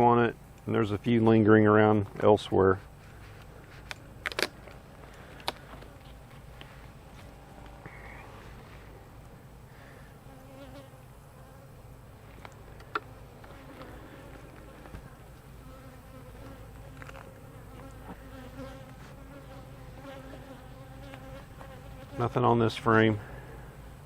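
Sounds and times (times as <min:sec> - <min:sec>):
bees buzzing: 0:04.9 - 0:24.0.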